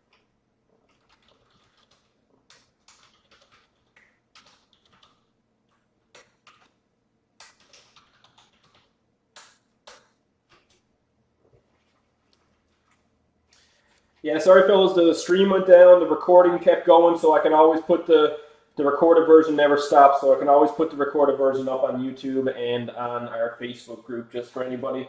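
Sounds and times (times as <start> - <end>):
typing on computer keyboard: 0.0 - 6.8, 7.4 - 10.8.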